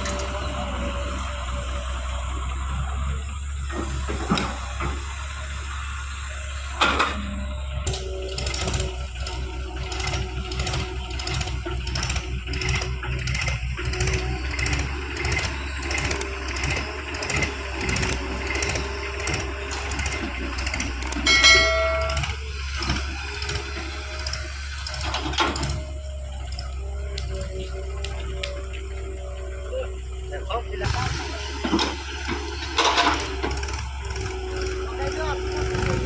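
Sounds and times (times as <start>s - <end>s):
diesel machinery running: 0.0s - 36.0s
short horn-like beep: 21.2s - 22.4s.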